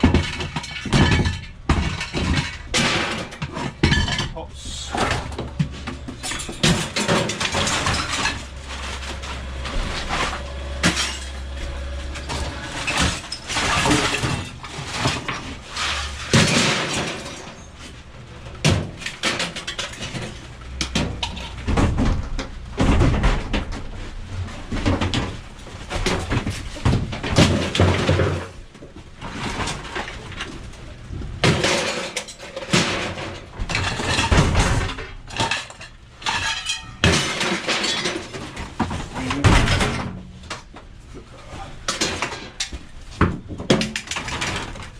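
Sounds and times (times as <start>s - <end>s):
scrap knocking and clanking: 0.0s - 44.9s
glass breaking: 6.1s - 17.7s.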